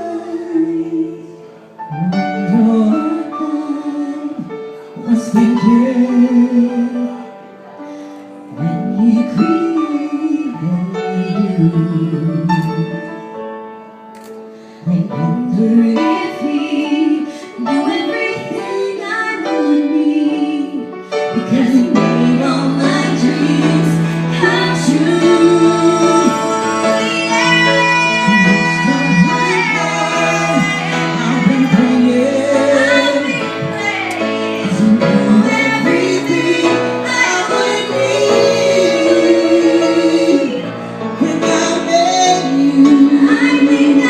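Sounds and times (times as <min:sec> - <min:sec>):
singer breathing: 0:07.7 - 0:08.5, 0:14.4 - 0:14.9
person singing: 0:14.9 - 0:44.0
instrumental accompaniment: 0:19.6 - 0:44.0.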